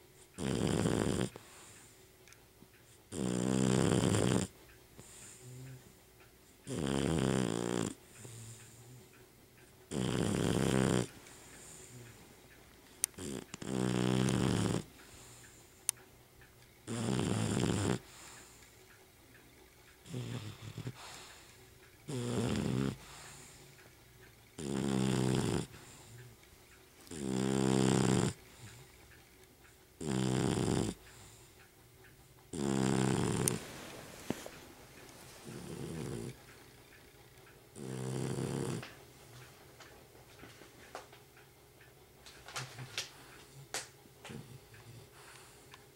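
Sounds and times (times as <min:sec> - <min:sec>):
dog snoring loudly: 0:00.4 - 0:01.9, 0:03.1 - 0:05.9, 0:06.7 - 0:09.0, 0:09.9 - 0:12.1, 0:13.2 - 0:15.5, 0:16.8 - 0:18.6, 0:20.0 - 0:23.7, 0:24.6 - 0:26.2, 0:27.1 - 0:28.8, 0:30.0 - 0:31.5, 0:32.5 - 0:34.4, 0:35.4 - 0:36.4, 0:37.7 - 0:39.0.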